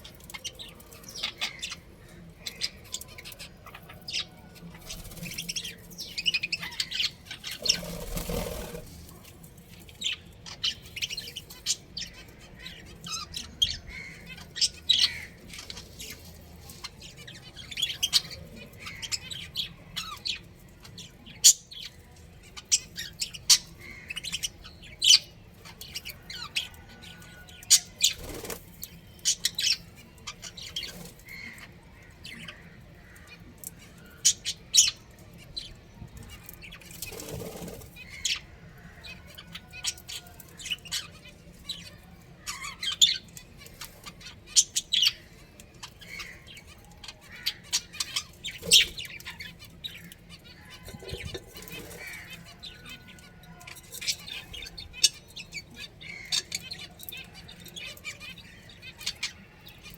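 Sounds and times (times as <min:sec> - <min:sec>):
budgerigars chirping: 0:00.0 - 0:08.9, 0:10.0 - 0:16.1, 0:41.8 - 0:59.8.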